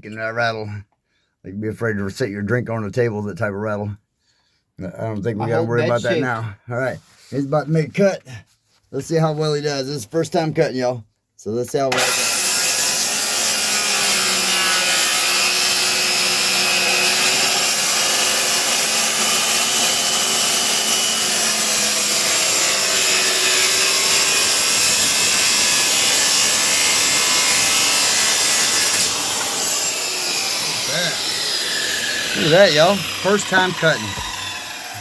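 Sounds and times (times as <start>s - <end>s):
power saw cutting wood: 11.9s - 35.0s.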